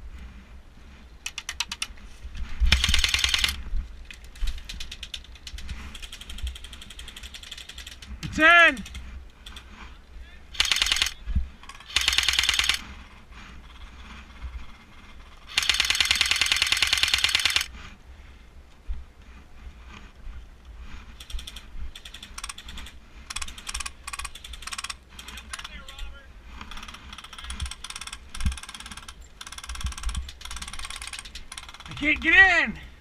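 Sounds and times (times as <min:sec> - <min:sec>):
airsoft gun firing: 0:02.7 - 0:03.6, 0:10.6 - 0:12.9, 0:15.5 - 0:17.7.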